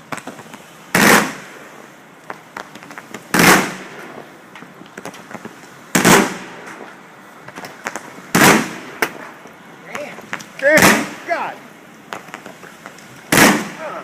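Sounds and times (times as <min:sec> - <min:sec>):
loud firework booms: 0:00.0 - 0:01.8, 0:02.7 - 0:04.3, 0:05.0 - 0:06.9, 0:07.5 - 0:09.4, 0:10.3 - 0:11.5, 0:13.2 - 0:14.0
firework pops and crackles: 0:00.0 - 0:14.0.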